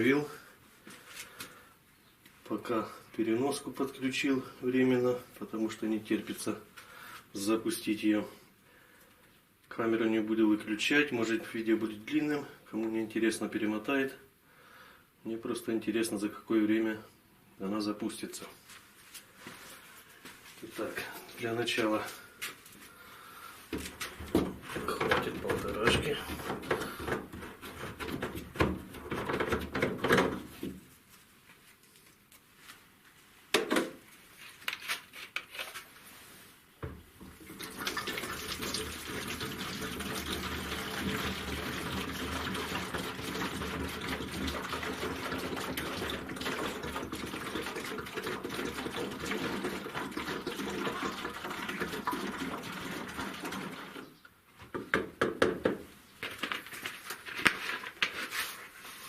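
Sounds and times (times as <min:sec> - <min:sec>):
fuel pouring from plastic bottle: 0:23.8 - 0:29.7, 0:37.3 - 0:54.2.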